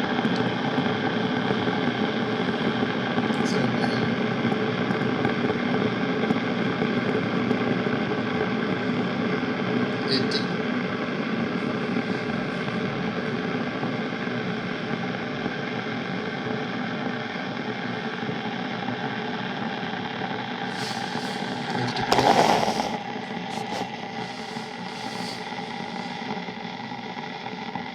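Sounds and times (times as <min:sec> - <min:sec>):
electric kettle heating water: 0:00.0 - 0:27.9.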